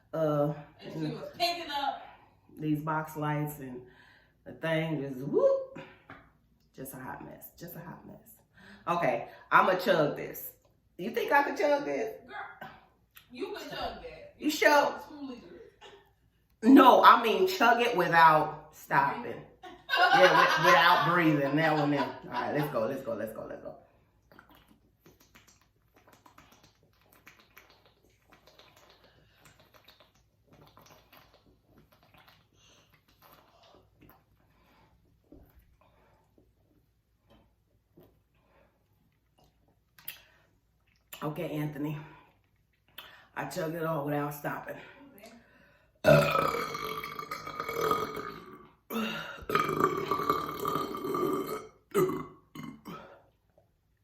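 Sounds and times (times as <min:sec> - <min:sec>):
swallowing gulps: 0:24.1 - 0:38.4, 0:46.0 - 0:53.8
long deep burps: 0:46.0 - 0:53.2.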